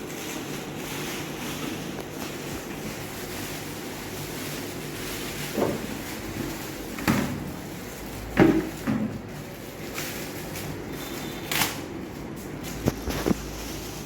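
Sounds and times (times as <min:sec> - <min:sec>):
steady background hum: 0:00.0 - 0:14.0
plastic knocks and thuds: 0:08.3 - 0:09.2.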